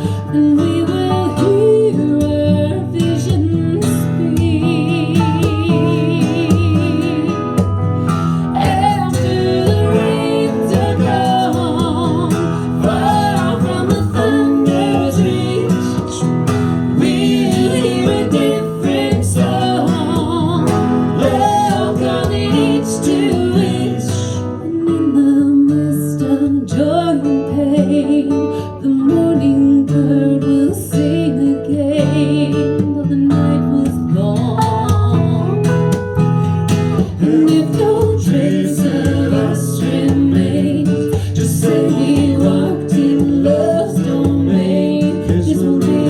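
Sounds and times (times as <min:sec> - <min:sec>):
acoustic guitar accompaniment: 0:00.0 - 0:46.0
electric guitar lead: 0:34.4 - 0:37.3.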